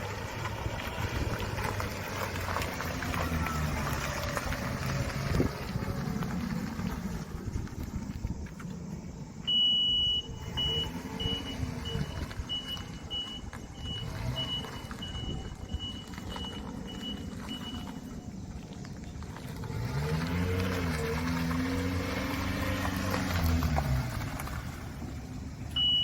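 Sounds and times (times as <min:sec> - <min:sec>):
truck engine running and revving: 0:00.0 - 0:09.3, 0:10.0 - 0:26.0
reverse warning beeps: 0:09.4 - 0:18.2, 0:25.8 - 0:26.0.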